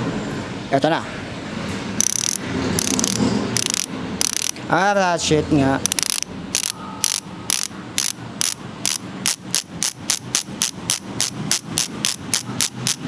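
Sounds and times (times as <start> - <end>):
bicycle hub ratchet clicking: 2.0 - 4.6, 5.8 - 13.0.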